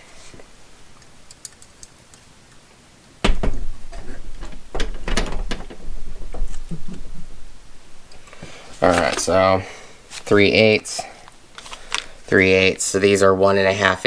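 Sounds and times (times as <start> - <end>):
handling noise: 3.1 - 12.5
sharp knocks and clicks: 3.2 - 8.6.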